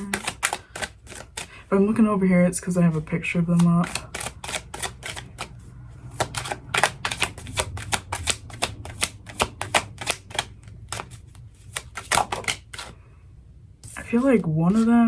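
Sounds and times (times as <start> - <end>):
cards being shuffled: 0.0 - 1.7, 2.9 - 13.0.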